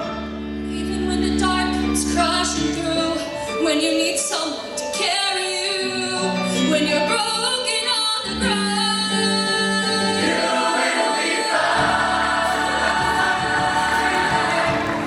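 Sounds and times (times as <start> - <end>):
choir singing: 9.8 - 15.0
lead voice singing: 9.8 - 15.0.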